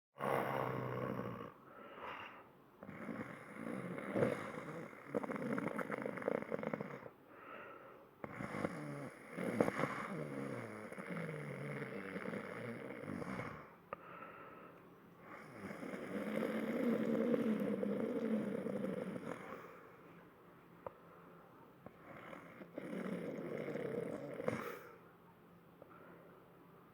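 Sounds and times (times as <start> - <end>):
person fake-snoring: 0.2 - 7.1, 8.2 - 13.8, 15.3 - 19.7, 22.0 - 25.0.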